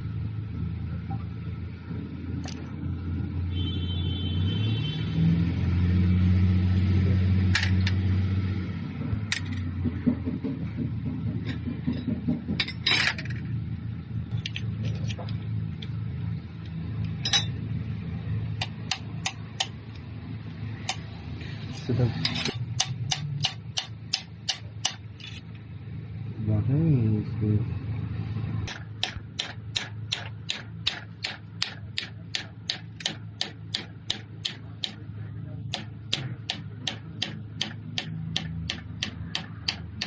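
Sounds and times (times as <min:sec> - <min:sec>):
diesel engine revving: 0:04.4 - 0:12.6
sharp clicks and knocks: 0:09.0 - 0:13.5, 0:22.2 - 0:25.6, 0:28.7 - 0:35.1, 0:35.7 - 0:40.0.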